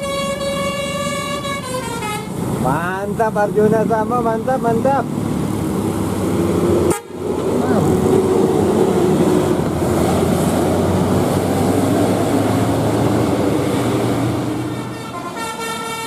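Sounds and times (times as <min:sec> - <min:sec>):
bus horn tone: 0:00.0 - 0:02.4, 0:06.9 - 0:07.2, 0:14.7 - 0:16.0
bus engine passing: 0:00.0 - 0:16.0.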